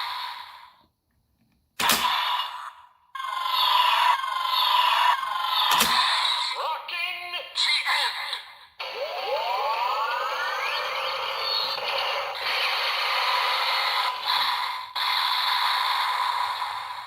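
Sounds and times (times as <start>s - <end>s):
electronic rising sweep: 8.9s - 12.3s.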